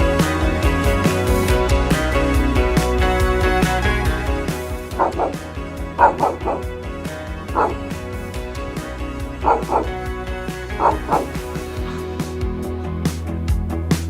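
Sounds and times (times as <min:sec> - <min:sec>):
background music: 0:00.0 - 0:14.0
dog yipping: 0:04.9 - 0:05.4, 0:06.0 - 0:06.6, 0:07.6 - 0:07.9, 0:09.4 - 0:10.0, 0:10.8 - 0:11.5.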